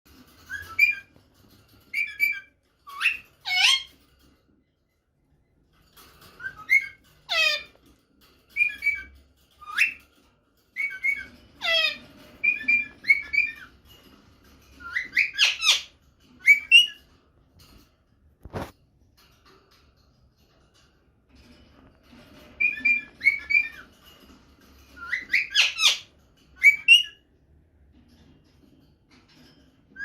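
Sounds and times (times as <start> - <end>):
parakeet whistled chirps and screeches: 0.3 - 1.2, 1.8 - 4.0, 6.3 - 7.8, 8.5 - 10.1, 10.7 - 14.0, 14.7 - 17.1, 22.4 - 24.0, 24.9 - 27.2.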